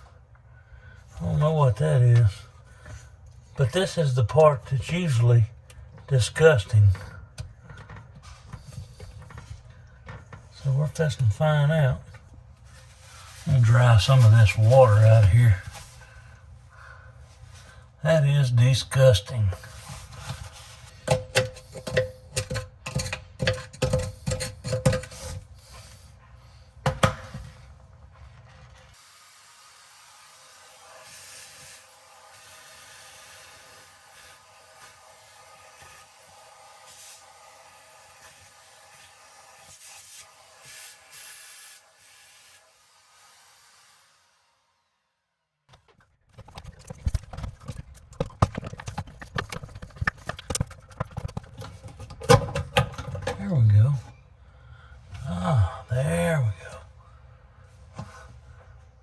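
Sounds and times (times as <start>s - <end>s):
hollow plastic clicks and knocks: 45.8s - 53.4s.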